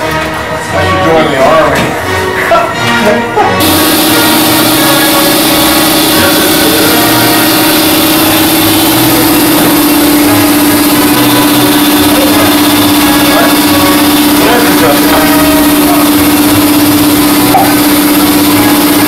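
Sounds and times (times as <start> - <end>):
loud machine drone: 3.6 - 19.0.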